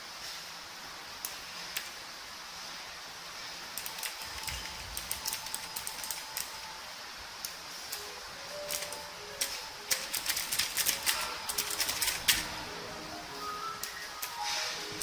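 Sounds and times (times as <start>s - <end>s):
steady hiss: 0.0s - 15.0s
mechanical keyboard clicks: 1.2s - 2.0s, 3.8s - 6.7s, 7.4s - 12.6s, 13.7s - 14.4s.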